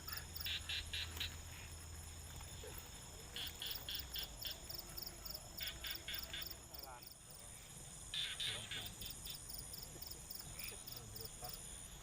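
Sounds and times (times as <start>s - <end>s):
frog-like chirps: 0.0s - 1.7s, 3.3s - 4.7s, 5.6s - 6.6s, 8.1s - 9.5s
insects chirping: 0.0s - 12.0s.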